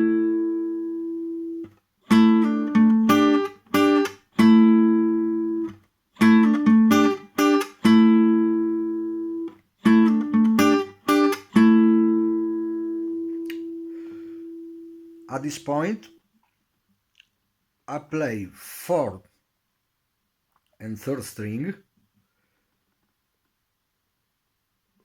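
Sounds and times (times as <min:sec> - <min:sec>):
clean electric guitar riff: 0:00.0 - 0:16.1.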